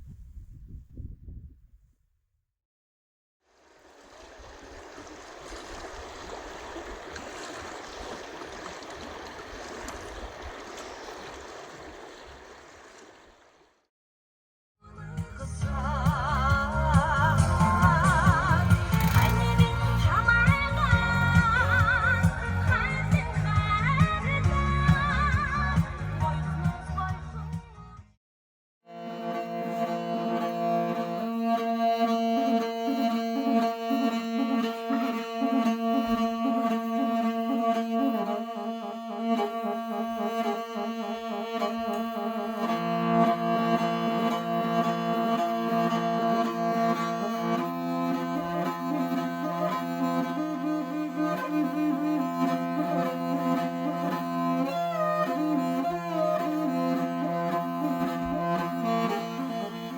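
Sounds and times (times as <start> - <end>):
bowed string instrument melody: 14.9 - 27.5, 28.9 - 59.9.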